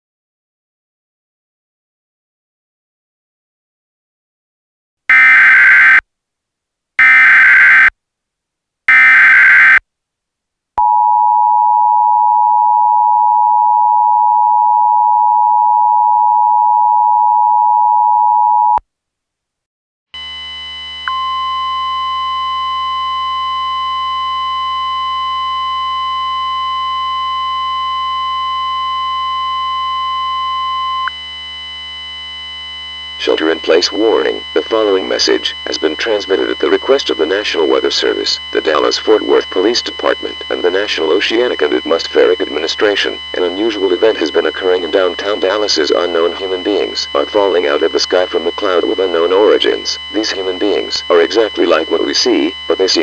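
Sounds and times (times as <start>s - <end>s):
screeching data bursts: 5.1s - 6.0s, 7.0s - 7.9s, 8.9s - 9.8s
two-tone attention signal: 5.1s - 6.0s, 7.0s - 7.9s, 8.9s - 9.8s
steady single tone: 20.2s - 33.2s.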